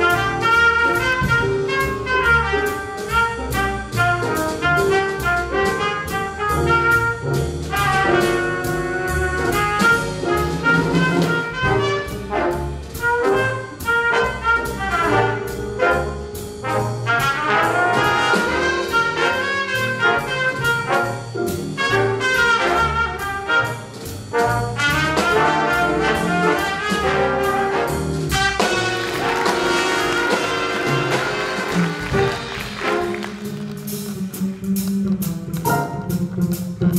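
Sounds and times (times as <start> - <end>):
drum and cymbal hits: 0.0 - 36.9
jazz ensemble playing: 0.0 - 36.9.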